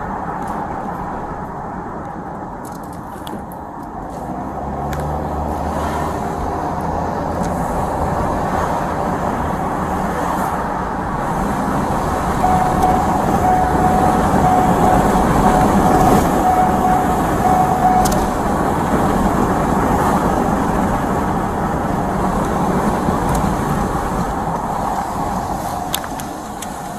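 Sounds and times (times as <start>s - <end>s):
moving vehicle rumble: 0.0s - 26.9s
thin steady tone: 12.4s - 18.5s.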